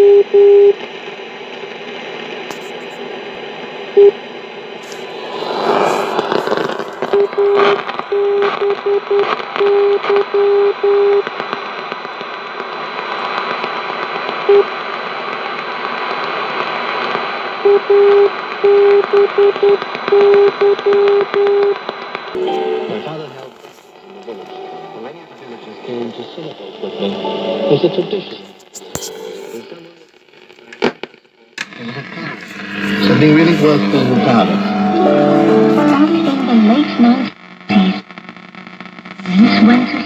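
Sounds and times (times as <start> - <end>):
radio receiver hiss: 0.7 - 8.6, 22.4 - 36.8
radio crackle: 0.7 - 9.4, 22.4 - 40.0
morse code beeping tone: 22.4 - 25.9, 32.7 - 36.7.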